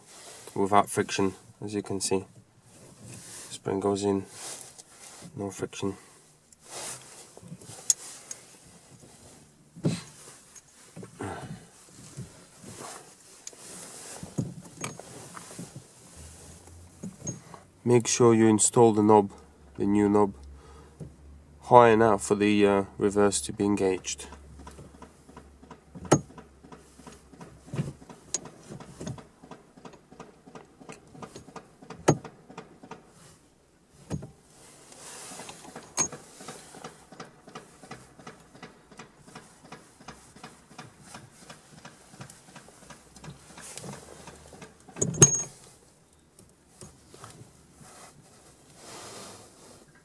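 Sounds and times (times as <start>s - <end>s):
gear lever clicks and clunks: 14.3s - 15.1s, 24.0s - 33.1s, 35.4s - 45.7s.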